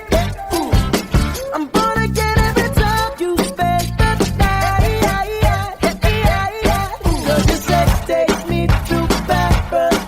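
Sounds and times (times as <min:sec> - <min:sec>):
funk-pop music: 0:00.0 - 0:10.0
steady drum beat: 0:00.0 - 0:10.0.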